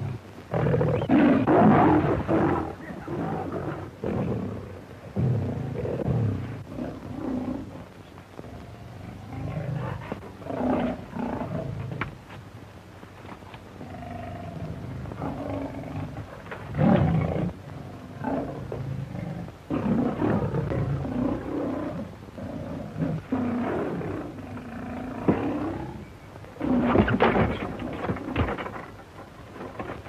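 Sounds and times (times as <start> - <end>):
tiger roaring and snarling: 0.6 - 7.8, 9.0 - 12.0, 13.8 - 26.0.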